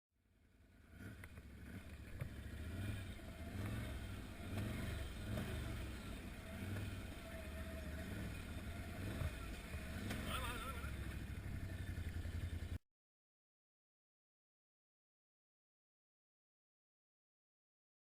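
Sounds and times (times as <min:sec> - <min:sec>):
atv engine rumbling: 0:00.2 - 0:12.8.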